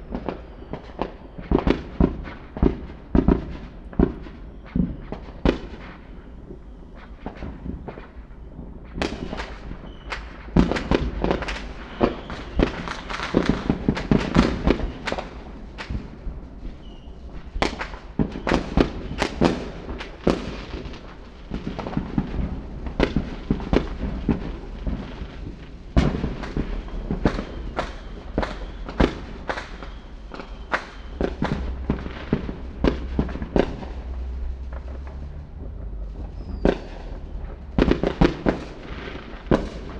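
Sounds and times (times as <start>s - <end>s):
fireworks bangs and crackles: 0.0s - 39.9s
steady low rumble: 20.9s - 39.9s.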